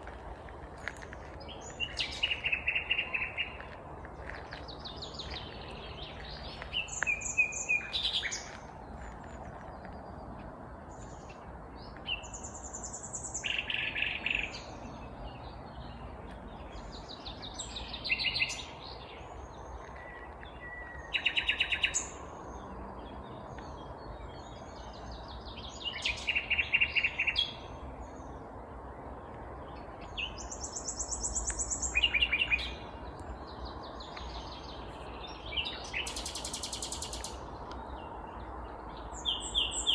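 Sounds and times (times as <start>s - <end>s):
nightingale singing: 1.4s - 3.6s, 4.8s - 8.6s, 29.8s - 33.0s.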